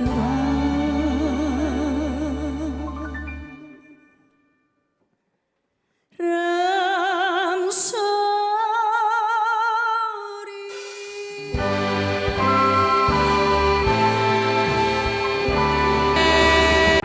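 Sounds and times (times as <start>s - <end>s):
woman singing unaccompanied: 6.2s - 11.7s, 13.6s - 17.0s
band with deep bass: 11.6s - 17.0s.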